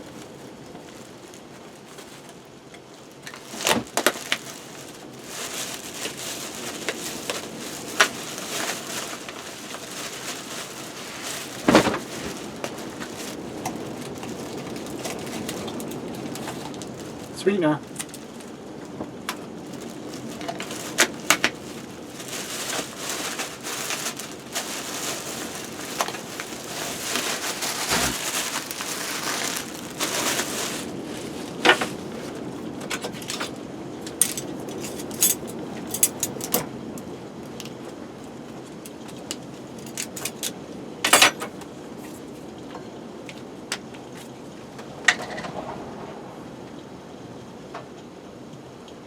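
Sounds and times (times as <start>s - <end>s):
wood fire crackling: 0.0s - 33.4s
fire popping: 3.3s - 32.4s.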